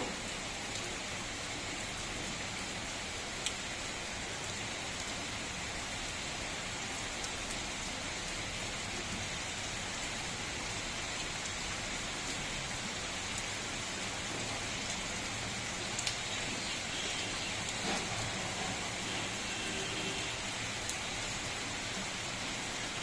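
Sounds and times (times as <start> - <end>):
heavy rain falling: 0.0 - 23.0
sharp rain drop ticks: 3.4 - 3.6, 15.8 - 19.2.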